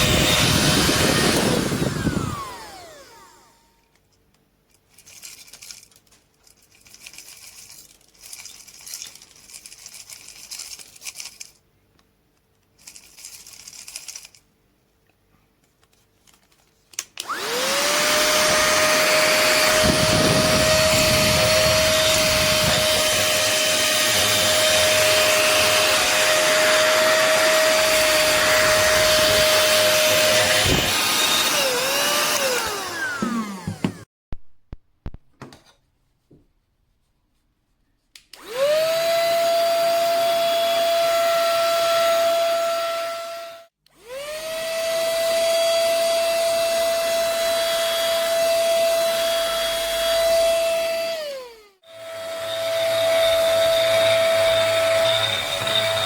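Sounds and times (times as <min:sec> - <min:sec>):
handheld vacuum motor whining: 0:00.0 - 0:03.8, 0:17.2 - 0:34.1, 0:38.4 - 0:56.0.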